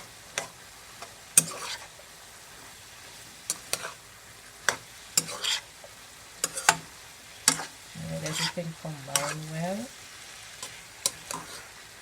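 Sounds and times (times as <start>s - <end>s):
food sizzling: 0.0s - 12.0s
spoon scraping against pot: 0.4s - 1.9s, 3.5s - 4.0s, 4.7s - 5.7s, 6.4s - 9.5s, 10.6s - 11.7s.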